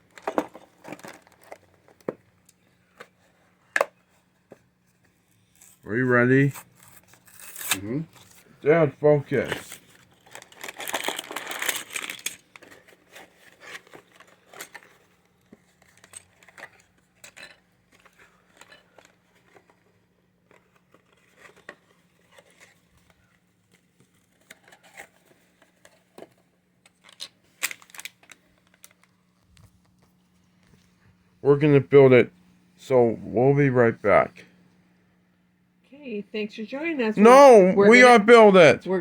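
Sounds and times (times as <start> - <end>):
crinkling and rustling packaging: 0.0 - 31.3
packaging tearing: 6.6 - 8.4, 9.5 - 17.0, 26.9 - 29.2.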